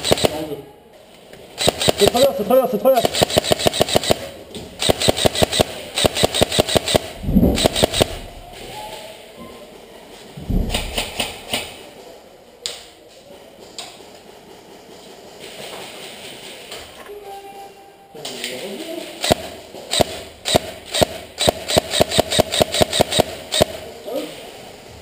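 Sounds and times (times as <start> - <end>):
airsoft gun full-auto bursts: 0.0 - 0.5, 1.6 - 8.2, 19.2 - 23.9.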